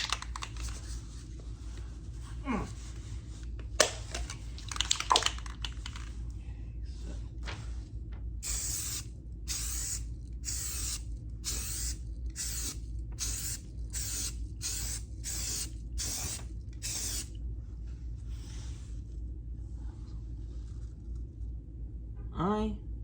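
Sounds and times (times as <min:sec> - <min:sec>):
aerosol spray can bursts: 0:08.4 - 0:17.3.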